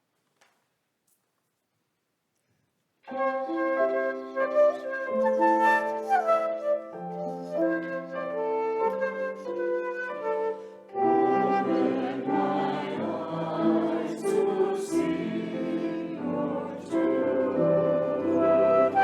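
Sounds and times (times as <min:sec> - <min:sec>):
choir singing with instruments: 0:11.0 - 0:19.0.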